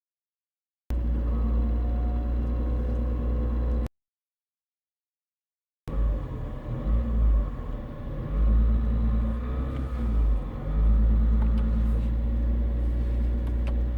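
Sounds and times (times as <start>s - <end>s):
diesel engine rumbling: 0.9s - 3.9s, 5.9s - 13.9s.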